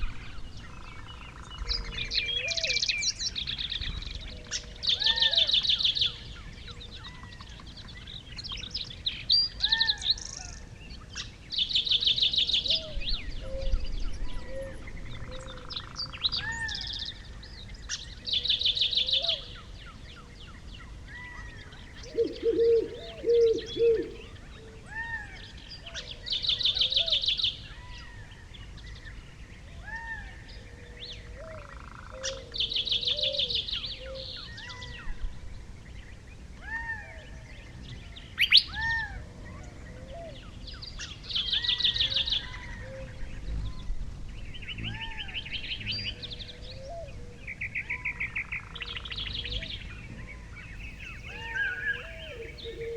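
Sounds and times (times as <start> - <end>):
louder lower bird calls: 22.0 - 24.4, 50.8 - 52.9
bird whistles and chirps: 51.0 - 52.9.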